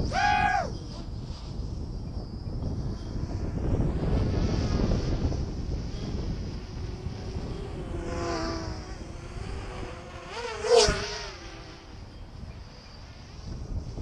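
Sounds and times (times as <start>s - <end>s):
drone propellers buzzing: 0.0s - 14.0s.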